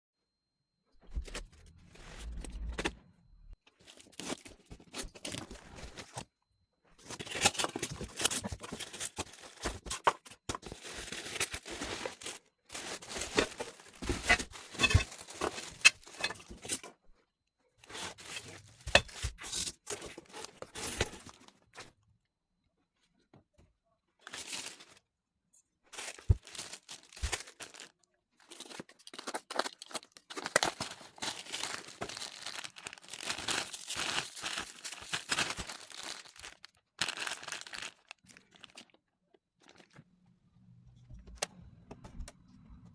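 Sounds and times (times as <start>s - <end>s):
packaging ripping and rustling: 3.8s - 6.2s, 7.0s - 16.9s, 25.9s - 39.0s.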